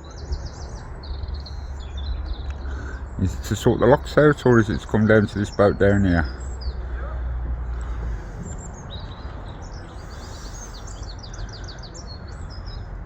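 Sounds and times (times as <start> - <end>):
low outdoor rumble: 0.0 - 13.0
small bird chirping: 7.8 - 13.0.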